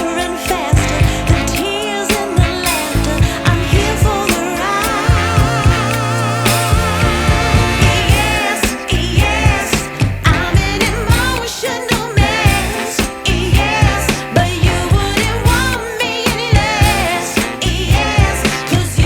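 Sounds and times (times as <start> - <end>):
lead melody with vibrato: 0.0 - 8.7
drum beat: 0.0 - 19.0
bass line: 0.7 - 1.8, 2.4 - 11.5, 12.2 - 19.0.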